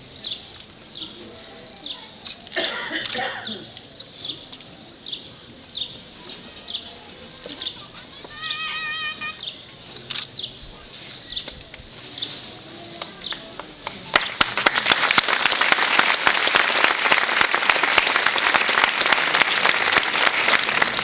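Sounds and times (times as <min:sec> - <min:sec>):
birds chirping: 0:00.0 - 0:14.2
crowd applauding: 0:13.0 - 0:21.0.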